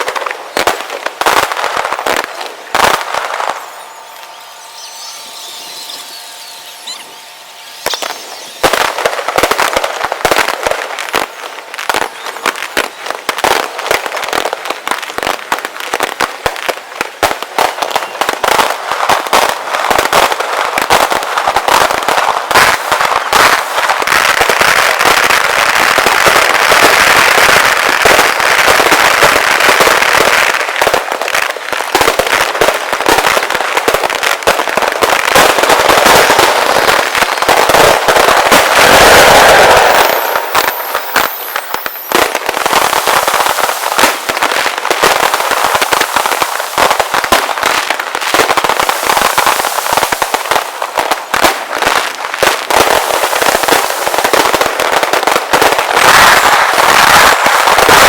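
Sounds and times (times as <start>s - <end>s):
fireworks bangs and crackles: 0.0s - 58.0s.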